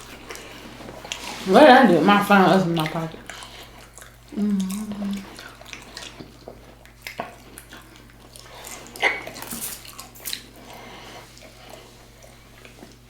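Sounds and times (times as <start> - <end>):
chewing and biting: 3.2 - 13.0.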